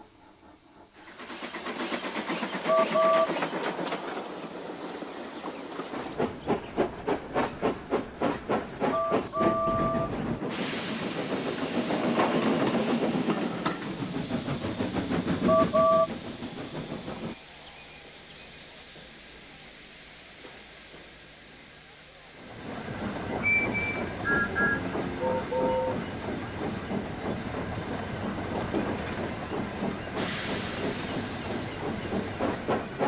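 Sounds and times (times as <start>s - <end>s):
steam hissing: 0.0s - 8.8s, 10.2s - 33.0s
steam locomotive chuffing: 0.0s - 33.0s
two-note steam whistle toots: 2.7s - 3.3s, 23.4s - 26.0s.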